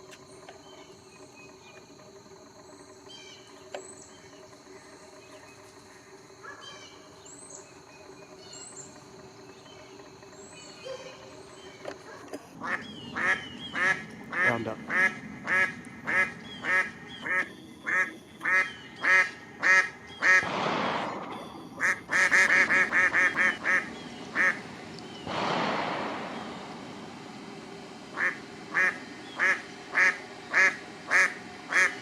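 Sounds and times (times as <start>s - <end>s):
duck quacking: 12.6s - 20.5s, 21.8s - 24.6s, 28.1s - 32.0s.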